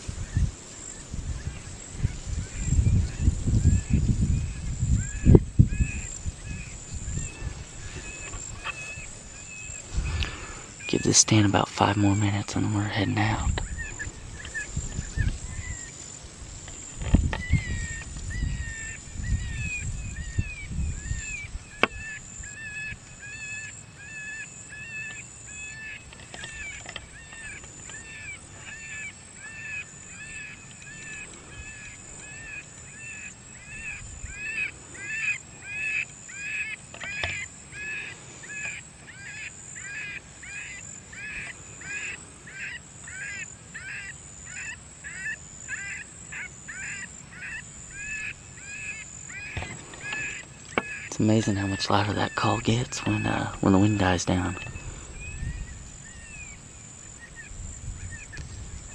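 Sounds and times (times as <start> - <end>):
wind rumble on microphone: 0.0 - 23.2, 33.4 - 35.0, 51.1 - 58.9.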